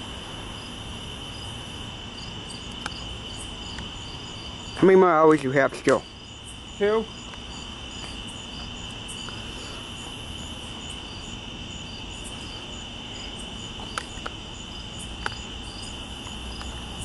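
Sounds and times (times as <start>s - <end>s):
crickets trilling: 0.0s - 17.0s
insect pulsing: 0.0s - 17.0s.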